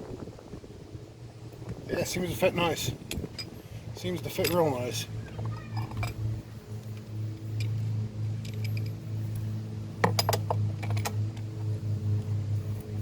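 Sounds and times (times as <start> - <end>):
low mechanical hum: 0.0 - 13.0
metallic clinks of hand tools: 4.2 - 5.0.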